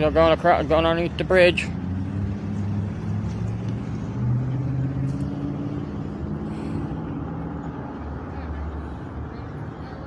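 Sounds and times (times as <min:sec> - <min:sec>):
engine humming: 0:00.0 - 0:10.0.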